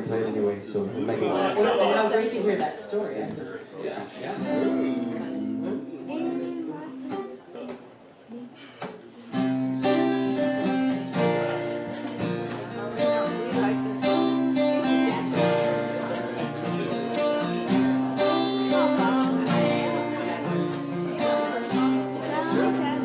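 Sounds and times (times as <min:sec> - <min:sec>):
strummed acoustic guitar: 0:04.4 - 0:07.7, 0:09.3 - 0:23.0.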